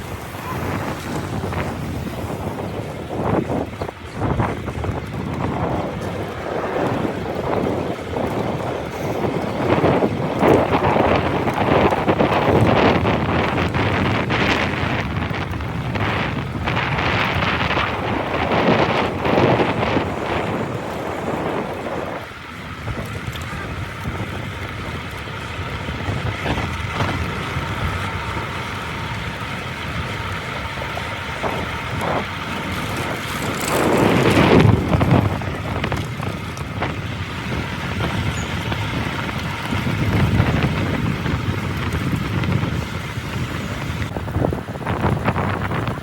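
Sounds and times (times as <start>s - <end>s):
vehicle passing: 0.0s - 14.0s
road traffic noise: 0.0s - 46.0s
wind on microphone: 0.0s - 46.0s.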